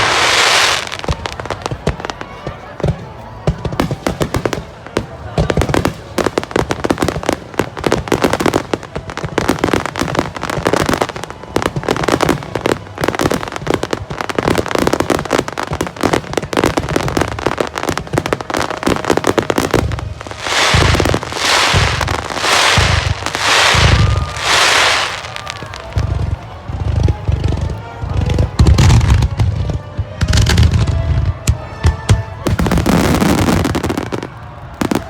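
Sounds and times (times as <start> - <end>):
fireworks crackling: 0.0 - 35.0
firework shells booming: 18.9 - 26.1.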